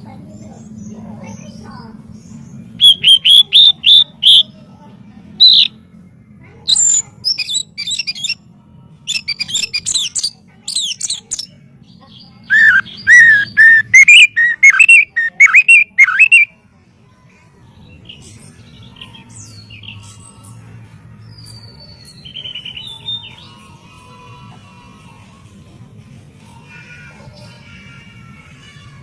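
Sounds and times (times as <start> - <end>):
bird singing: 0.4 - 4.6, 5.4 - 5.8, 6.7 - 8.4, 9.1 - 16.5.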